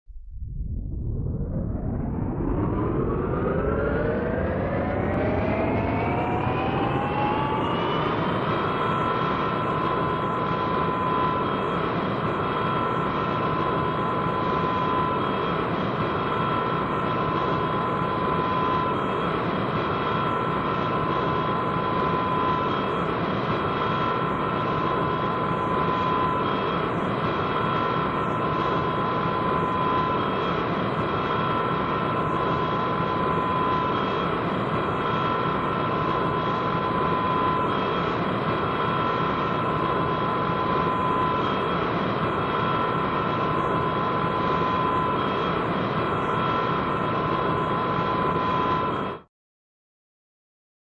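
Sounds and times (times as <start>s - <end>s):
engine rumble with high whine: 0.1s - 12.3s.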